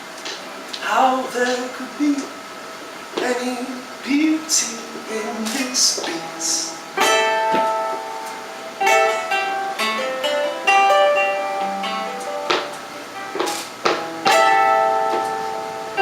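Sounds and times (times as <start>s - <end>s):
guitar strumming chords: 3.2s - 16.0s.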